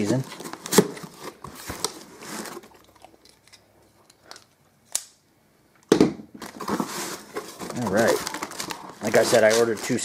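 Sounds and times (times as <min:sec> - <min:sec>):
packaging crinkling: 0:06.4 - 0:10.0.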